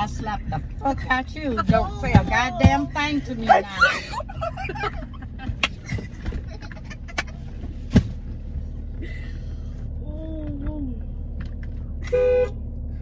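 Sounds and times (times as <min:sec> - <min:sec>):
car rumble from inside cabin: 0:00.0 - 0:13.0
car horn blare: 0:12.0 - 0:12.7.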